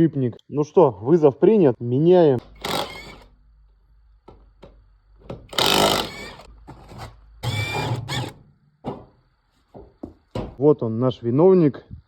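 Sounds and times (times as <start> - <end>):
power tool bursts: 2.4 - 3.3, 5.5 - 6.5, 7.4 - 8.4.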